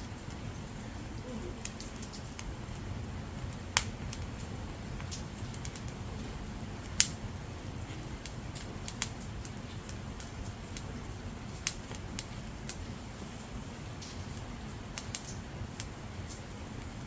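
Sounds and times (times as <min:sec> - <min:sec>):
firewood crackling and popping: 0:00.0 - 0:17.0.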